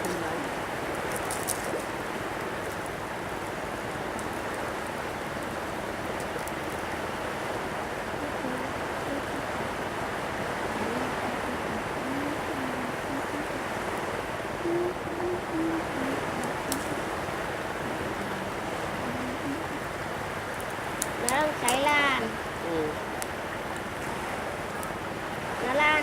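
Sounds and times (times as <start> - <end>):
faint crackles: 0.0 - 7.0, 14.6 - 25.0
sea surf on shore: 0.0 - 26.0.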